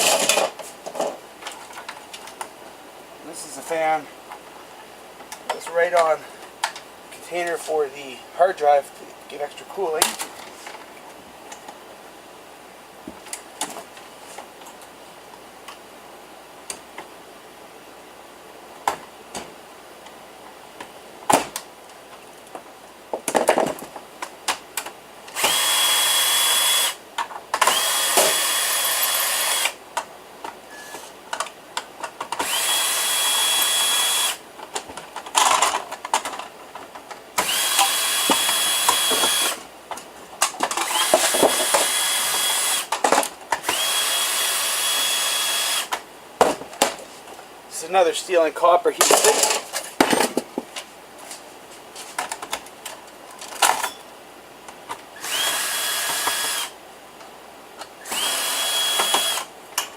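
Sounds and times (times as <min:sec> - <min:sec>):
small metal parts clattering: 0:00.0 - 0:01.9, 0:35.2 - 0:36.5, 0:49.0 - 0:50.4
power screwdriver whining: 0:25.3 - 0:27.0, 0:27.6 - 0:29.8, 0:32.4 - 0:34.4, 0:37.4 - 0:39.6, 0:40.8 - 0:42.9, 0:43.6 - 0:45.9, 0:55.2 - 0:56.7, 0:58.0 - 0:59.5.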